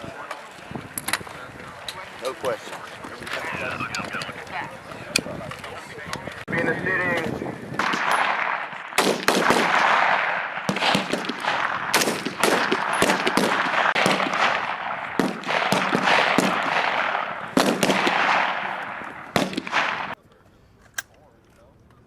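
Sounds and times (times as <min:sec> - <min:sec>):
rifles firing with echo: 0:07.8 - 0:20.2.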